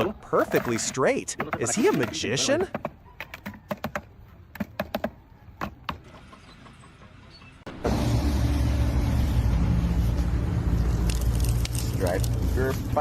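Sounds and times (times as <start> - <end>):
engine running with low hum: 7.7 - 13.0.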